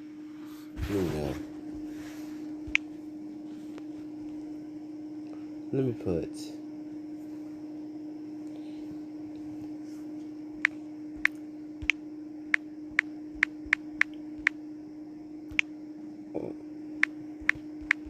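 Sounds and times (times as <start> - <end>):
steady low hum: 0.0 - 18.0
smartphone keyboard taps: 17.4 - 18.0.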